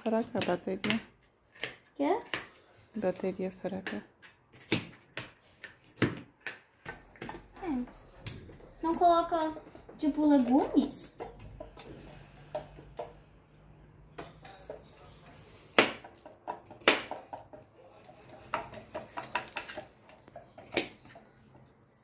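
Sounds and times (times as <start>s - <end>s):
pot and utensils clinking: 14.2s - 15.4s, 16.2s - 21.3s.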